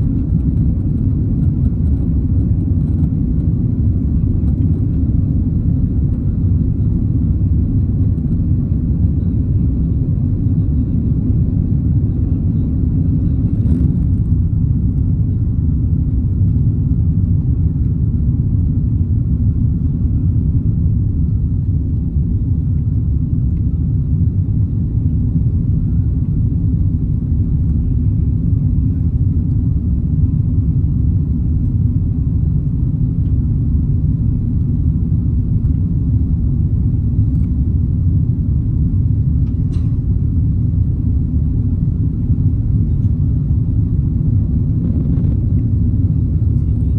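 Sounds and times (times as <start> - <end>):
jet engine rumble in cabin: 0.0 - 46.9.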